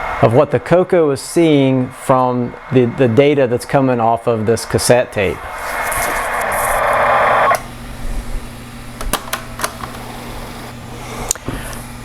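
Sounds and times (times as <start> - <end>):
low electrical hum: 0.0 - 12.0
warbling cassette data tone: 1.9 - 7.7.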